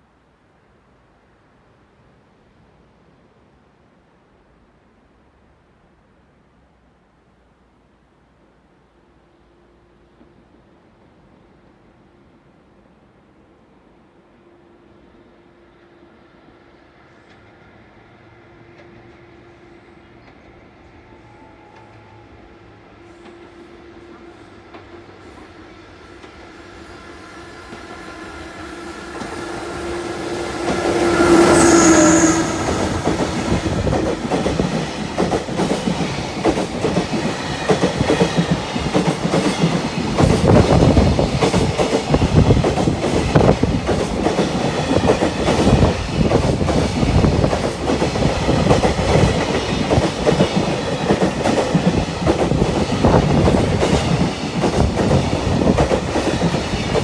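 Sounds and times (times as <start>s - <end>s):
train horn blast: 27.3s - 34.0s.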